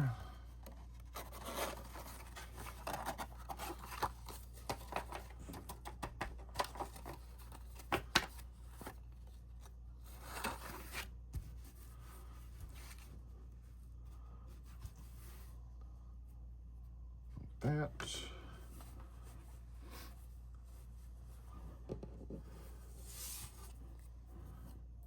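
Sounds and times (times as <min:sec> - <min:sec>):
paper rustling: 0:00.6 - 0:13.3.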